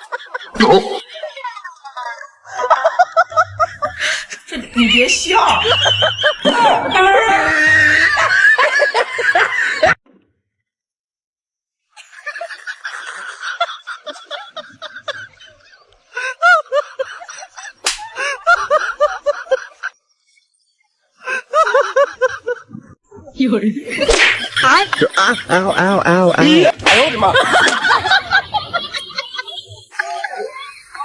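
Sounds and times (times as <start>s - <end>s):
people laughing and snickering: 0.0s - 10.0s, 12.0s - 20.0s, 21.2s - 23.0s, 23.8s - 31.0s
loud voices: 0.2s - 8.8s, 24.0s - 31.0s
sharp slap: 17.8s - 18.2s, 24.0s - 24.6s, 26.8s - 27.9s.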